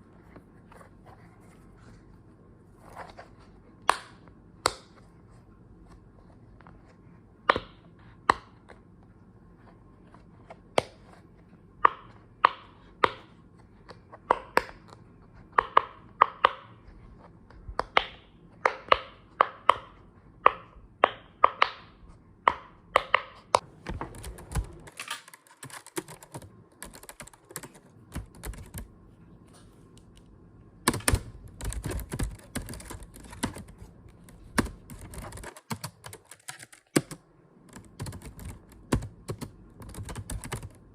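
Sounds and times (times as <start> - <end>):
typing on computer keyboard: 24.1 - 28.9, 30.9 - 40.8.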